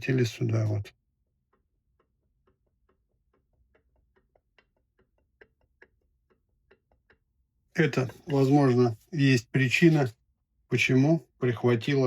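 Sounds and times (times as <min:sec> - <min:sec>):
faint metallic clicks and taps: 0:01.4 - 0:07.5.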